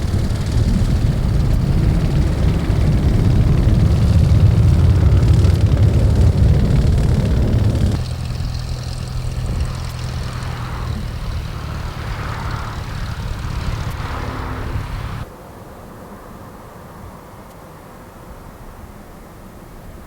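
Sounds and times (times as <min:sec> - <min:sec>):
jet engine humming: 0:00.0 - 0:15.3
jet engines at takeoff power: 0:00.0 - 0:15.3.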